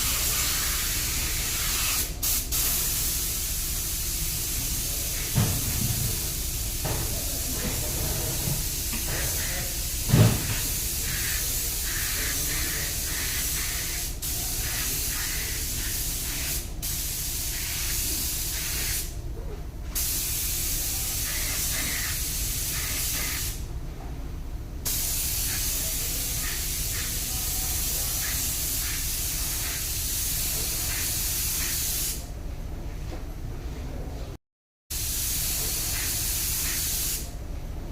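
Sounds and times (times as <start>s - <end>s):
thump: 10.1s - 10.6s.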